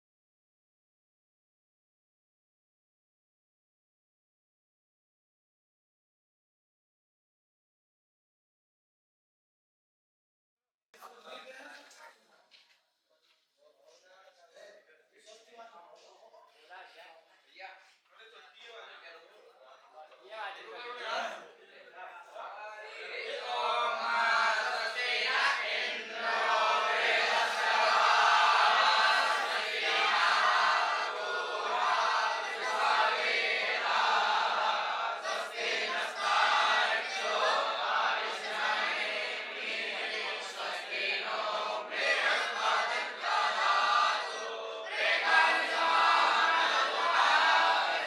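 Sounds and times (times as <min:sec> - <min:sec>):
boys chanting in unison: 0:20.7 - 0:21.4, 0:22.7 - 0:48.0.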